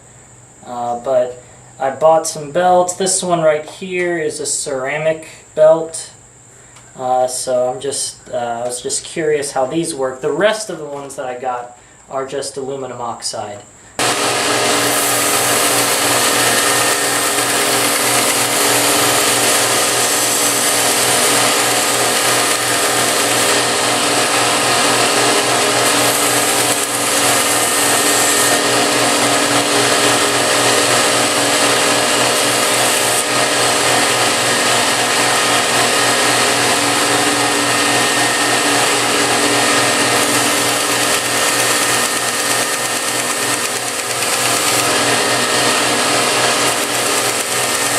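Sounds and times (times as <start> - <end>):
abrasive belt hissing: 13.9 - 47.9
grinder motor humming: 14.0 - 47.9.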